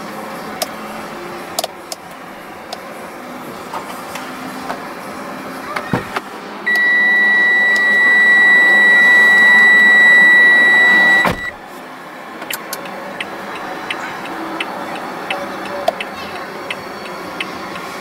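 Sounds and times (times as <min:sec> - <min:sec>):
car warning buzzer beep: 0:06.7 - 0:11.6.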